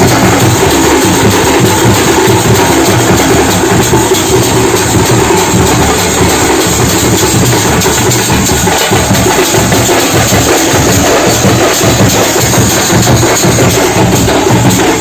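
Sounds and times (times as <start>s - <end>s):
drum ensemble drumming: 0.0s - 15.0s.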